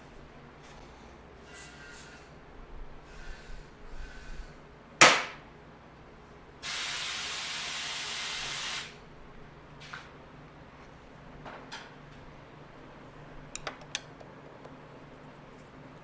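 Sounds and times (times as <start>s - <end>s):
pressurized gas hissing: 6.6s - 9.0s.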